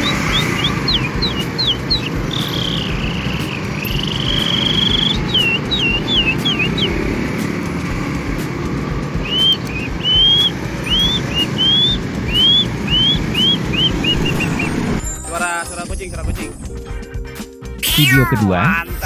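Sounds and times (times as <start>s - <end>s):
man whistling bird song: 0.0s - 7.0s, 9.2s - 15.0s.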